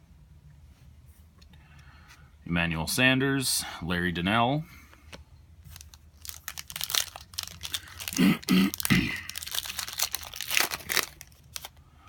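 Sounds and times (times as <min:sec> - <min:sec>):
foil wrapper crinkling: 0:05.7 - 0:11.8.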